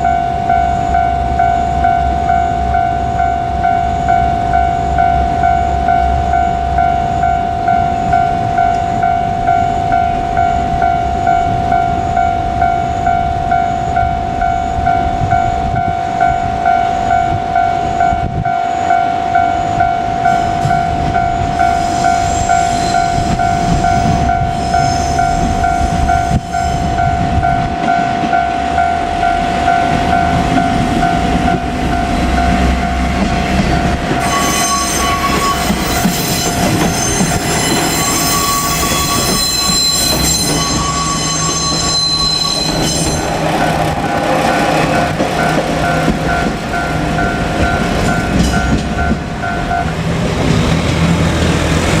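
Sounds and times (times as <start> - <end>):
diesel railcar passing: 0.0 - 52.0
wheels squealing on rail: 7.2 - 52.0
level crossing bell ringing: 33.7 - 36.6, 37.6 - 43.8.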